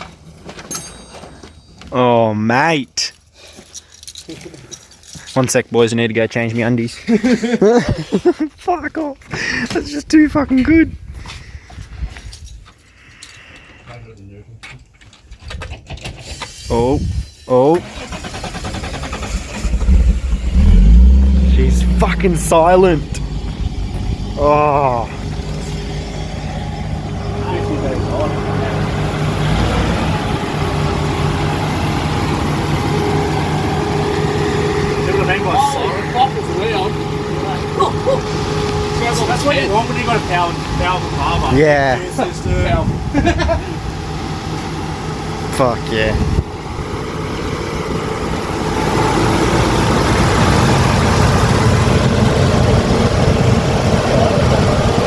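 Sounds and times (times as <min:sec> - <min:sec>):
car engine idling: 0:17.5 - 0:55.0.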